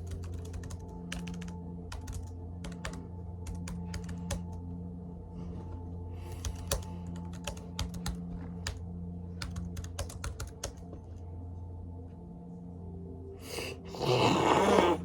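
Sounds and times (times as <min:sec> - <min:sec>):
laptop keyboard typing: 0:00.0 - 0:04.6, 0:06.2 - 0:08.8, 0:09.4 - 0:10.9
low steady hum: 0:00.0 - 0:15.0.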